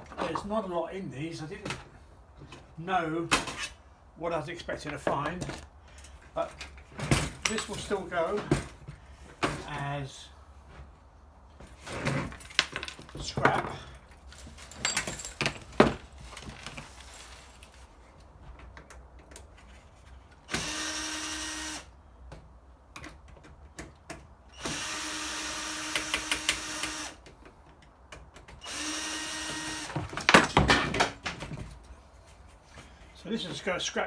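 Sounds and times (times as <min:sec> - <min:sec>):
handling clicks and knocks: 0:04.8 - 0:09.6, 0:12.3 - 0:17.4
power drill whining: 0:20.5 - 0:21.9, 0:24.6 - 0:27.2, 0:28.6 - 0:30.0.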